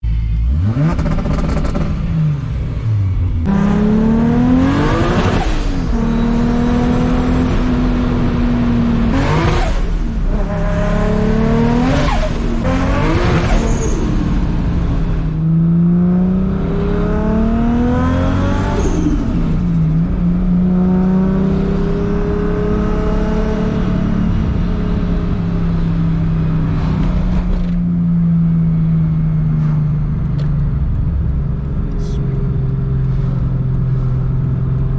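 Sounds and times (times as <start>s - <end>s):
car engine revving: 0.0s - 34.9s.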